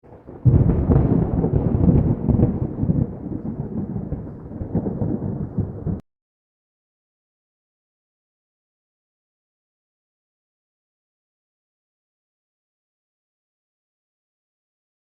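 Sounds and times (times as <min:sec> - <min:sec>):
thunder rumbling: 0:00.1 - 0:06.0.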